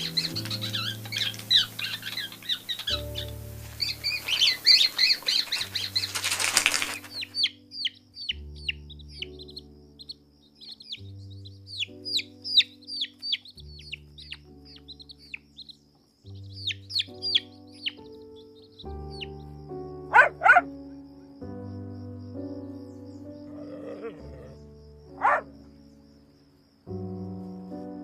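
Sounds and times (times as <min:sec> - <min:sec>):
rustling noise: 0:00.0 - 0:07.5
high bird chirps: 0:00.0 - 0:20.7
slow background music chords: 0:00.0 - 0:28.0.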